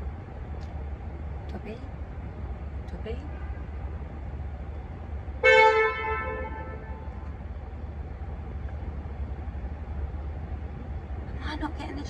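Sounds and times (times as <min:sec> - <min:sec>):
car engine idling: 0:00.0 - 0:12.0
car horn honk: 0:05.4 - 0:07.2.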